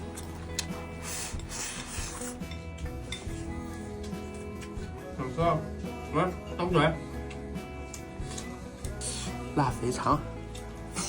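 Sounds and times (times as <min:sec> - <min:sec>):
background music with bass line: 0:00.0 - 0:11.0
rubbing or scraping noises: 0:00.7 - 0:03.6.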